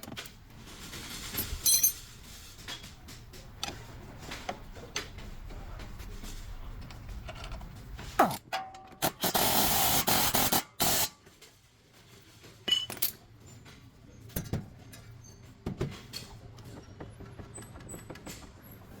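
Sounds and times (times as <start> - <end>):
metal tools clinking: 1.2 - 3.0, 12.5 - 13.8.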